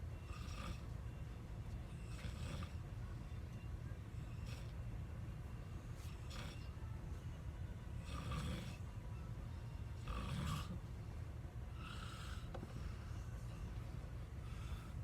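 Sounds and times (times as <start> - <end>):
low background hum: 0.0 - 15.0
person snoring: 8.0 - 8.8, 10.0 - 10.8, 11.8 - 12.5.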